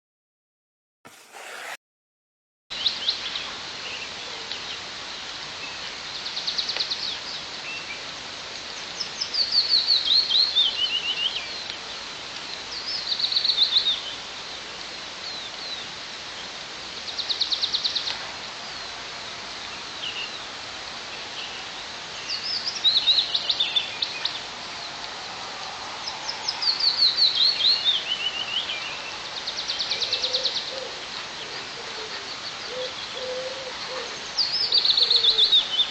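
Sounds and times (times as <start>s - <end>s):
small songbirds singing: 26.0s - 35.9s.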